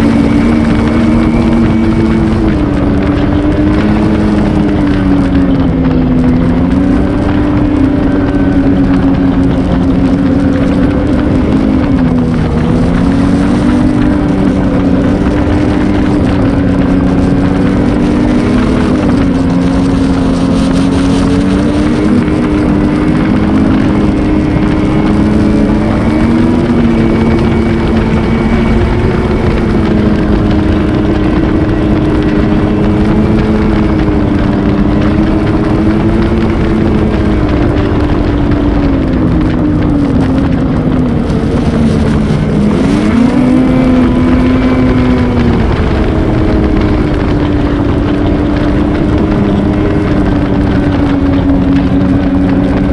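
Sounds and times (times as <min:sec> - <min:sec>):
snowmobile engine running: 0:00.0 - 0:52.9
wind and track noise: 0:00.0 - 0:52.9.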